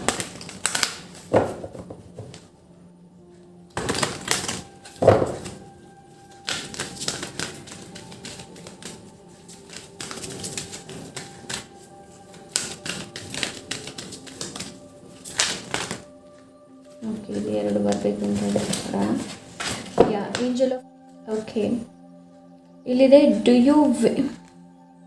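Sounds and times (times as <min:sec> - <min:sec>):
cards being shuffled by hand: 0:00.0 - 0:02.5, 0:03.7 - 0:20.6
soft background music: 0:00.0 - 0:25.0.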